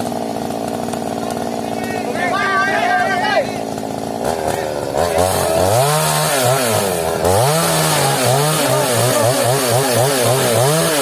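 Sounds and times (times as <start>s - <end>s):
chainsaw engine revving: 0.0s - 11.0s.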